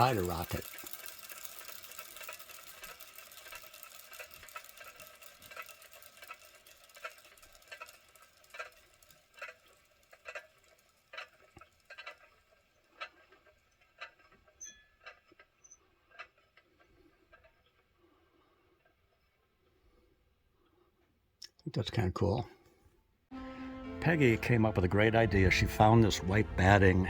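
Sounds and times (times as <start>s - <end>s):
clockwork toy ticking: 0.0s - 18.9s.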